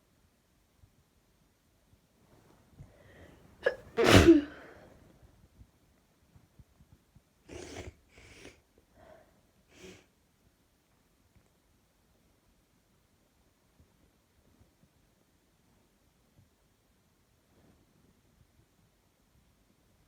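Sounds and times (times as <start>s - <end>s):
quiet breaths: 2.2s - 3.6s, 6.4s - 10.4s
person sneezing: 3.6s - 4.8s.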